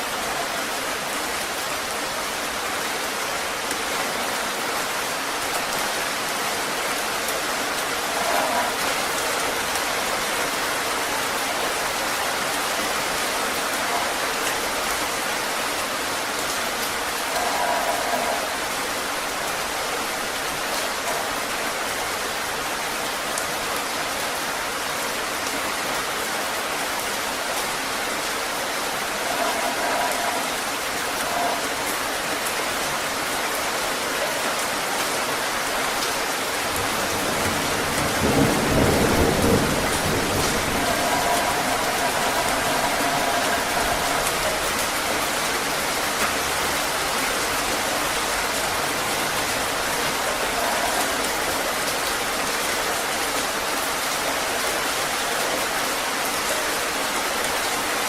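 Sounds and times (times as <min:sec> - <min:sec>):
heavy rain: 0:00.0 - 0:58.0.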